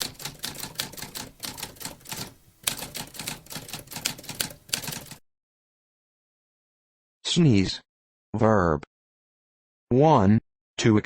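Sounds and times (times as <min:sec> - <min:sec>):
typewriter key strikes: 0:00.0 - 0:05.2.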